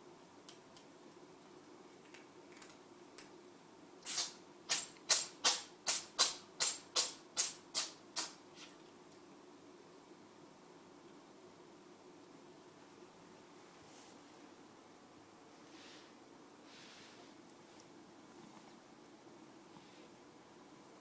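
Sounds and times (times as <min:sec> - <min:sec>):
cat sneezing: 0:04.0 - 0:08.4.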